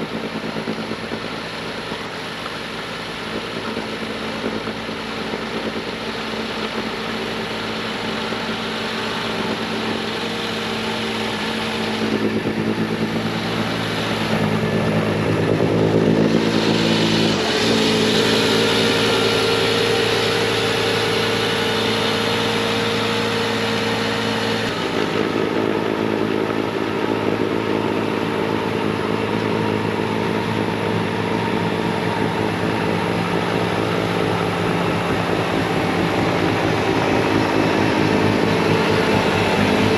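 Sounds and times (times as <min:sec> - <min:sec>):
diesel engine at full throttle: 0:00.0 - 0:39.9
snowblower hiss: 0:00.2 - 0:28.6.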